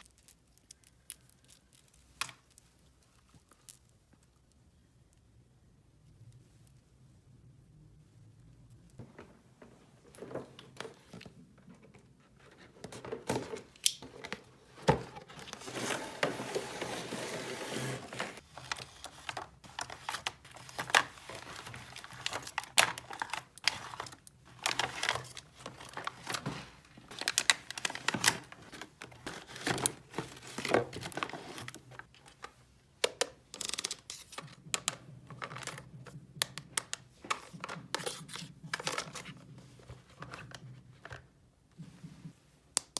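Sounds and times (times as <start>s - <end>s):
packaging crinkling and tearing: 17.8s - 32.1s.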